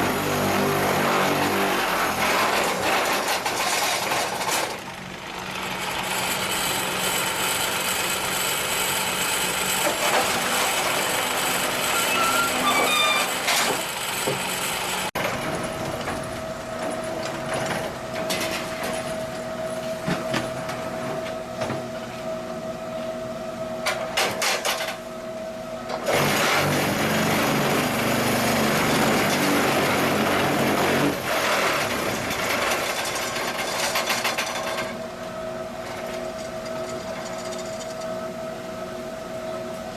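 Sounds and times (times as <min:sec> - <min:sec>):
block machine mechanical clatter: 0:31.3 - 0:35.0.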